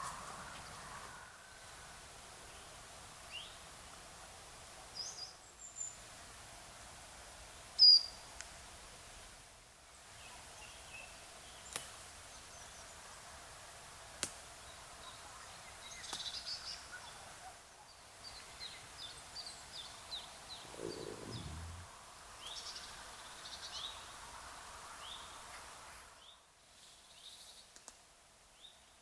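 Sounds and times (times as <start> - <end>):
small birds chirping: 20.5 - 22.0
low rumble: 20.7 - 22.0.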